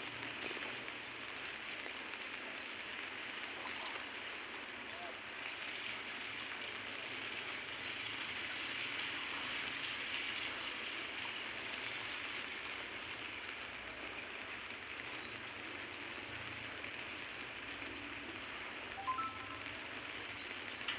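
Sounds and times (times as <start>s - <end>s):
light rain hissing: 0.0s - 20.9s
rising three-note call: 19.0s - 20.0s.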